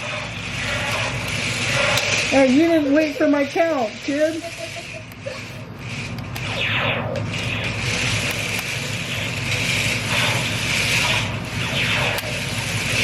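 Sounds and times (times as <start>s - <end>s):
toy tank motors whirring: 0.0s - 6.6s, 7.2s - 13.0s
falling zap tones: 5.9s - 13.0s.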